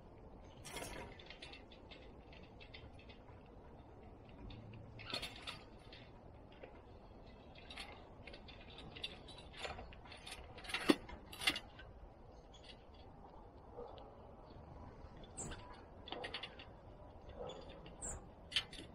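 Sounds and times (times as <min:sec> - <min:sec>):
bird feeder rattling and clicking: 0:00.5 - 0:13.1, 0:15.2 - 0:18.9.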